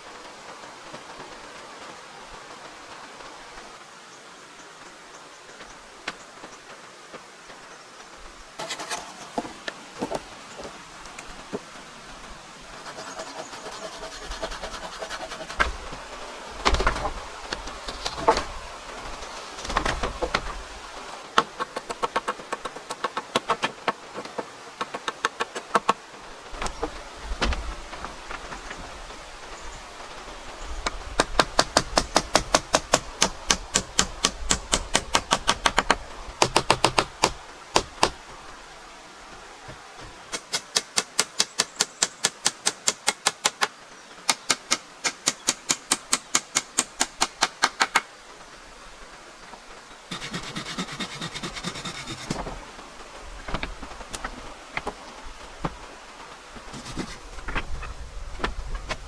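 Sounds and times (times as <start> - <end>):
rasping scraping noise: 8.6 - 9.6, 12.7 - 15.8, 50.1 - 52.6, 56.7 - 57.6
hammering on wood: 31.2 - 38.2.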